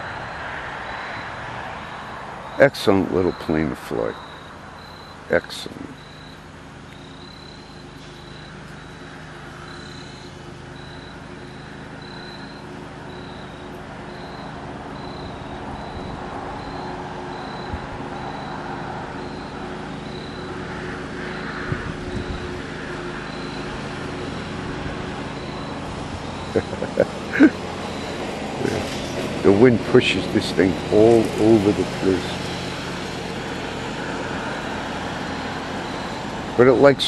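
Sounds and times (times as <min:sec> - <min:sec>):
lawnmower engine running: 0:00.0 - 0:37.0
wind noise: 0:15.2 - 0:18.6, 0:21.4 - 0:23.9.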